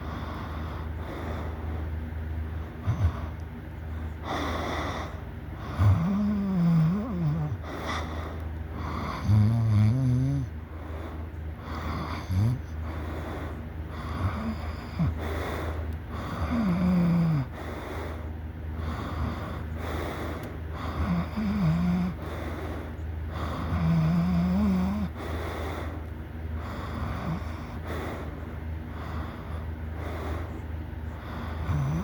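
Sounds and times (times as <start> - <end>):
steady low hum: 0.0 - 32.0
person snoring loudly: 5.7 - 8.0, 8.8 - 10.5, 11.7 - 12.9, 14.0 - 15.4, 16.1 - 17.7, 20.8 - 22.4, 23.4 - 25.4, 26.7 - 28.0, 31.2 - 32.0.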